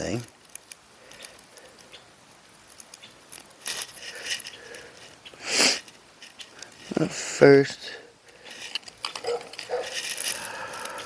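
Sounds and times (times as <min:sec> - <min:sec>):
small clicks and rustles: 0:00.0 - 0:07.1, 0:08.2 - 0:11.0
short hissing rush: 0:05.4 - 0:06.0.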